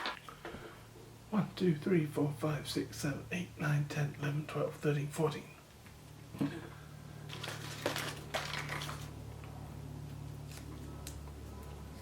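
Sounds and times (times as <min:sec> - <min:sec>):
steady low hum: 0:00.0 - 0:12.0
packaging rustling: 0:07.3 - 0:09.2.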